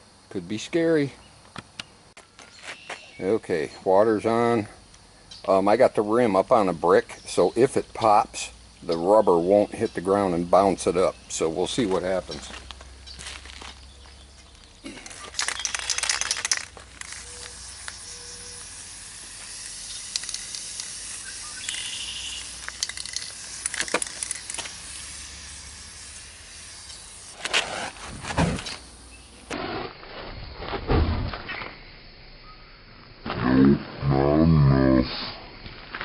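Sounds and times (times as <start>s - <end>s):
aerosol spray can hissing: 15.4s - 28.0s.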